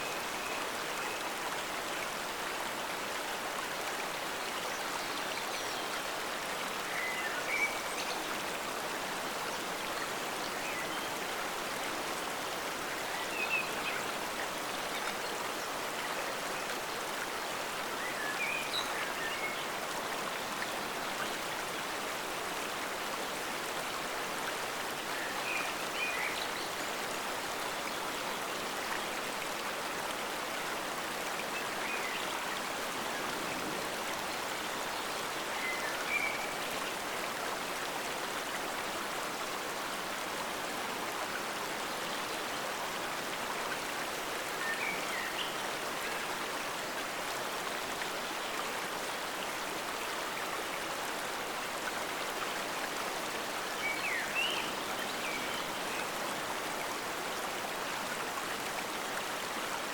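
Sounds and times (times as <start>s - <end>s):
stream water rushing: 0.0s - 59.9s.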